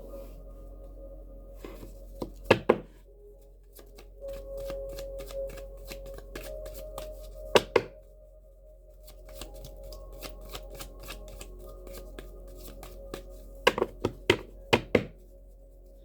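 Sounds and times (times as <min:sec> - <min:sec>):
soft ambient music: 0:00.0 - 0:16.0
cards being shuffled: 0:03.7 - 0:07.9, 0:09.0 - 0:15.1.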